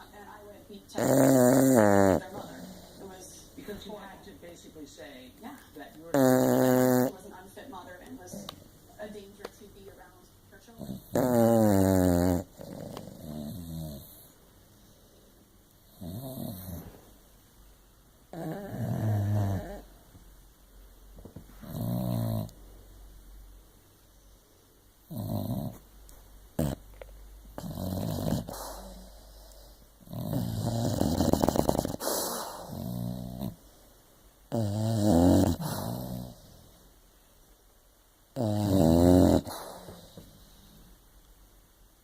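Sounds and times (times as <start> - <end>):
dog snoring: 0.9 - 3.4, 6.1 - 7.2, 10.8 - 17.1, 18.3 - 20.0, 21.6 - 22.6, 25.0 - 25.8, 26.5 - 33.8, 34.5 - 36.8, 38.3 - 40.9.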